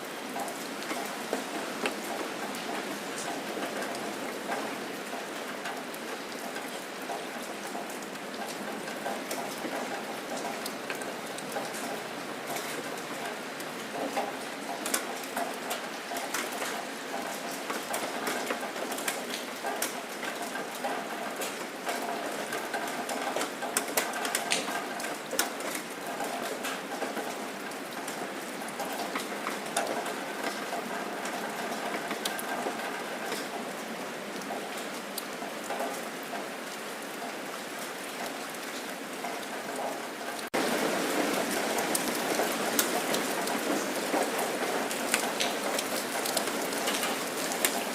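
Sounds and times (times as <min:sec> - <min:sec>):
rain falling: 0:00.0 - 0:47.9
raindrops ticking on surfaces: 0:00.0 - 0:47.9.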